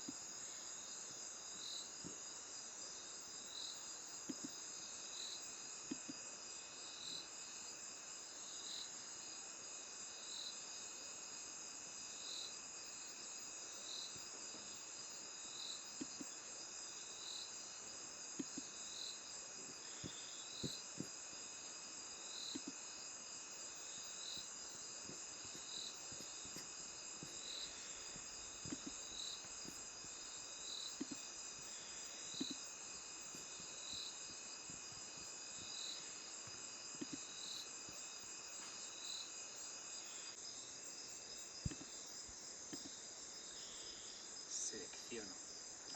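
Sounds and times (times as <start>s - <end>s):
insects chirping: 0.0s - 45.9s.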